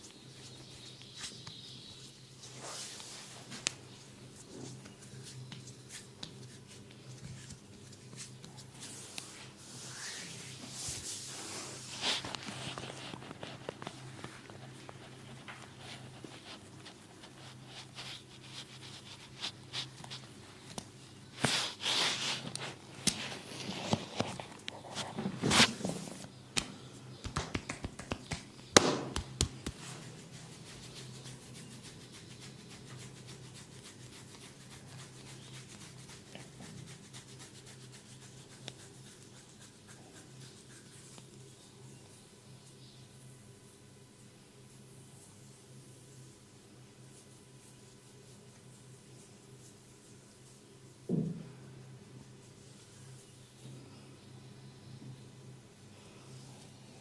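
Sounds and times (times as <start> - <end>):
hands rubbing skin: 0.4 - 41.5
sharp slaps and clicks: 26.6 - 29.8.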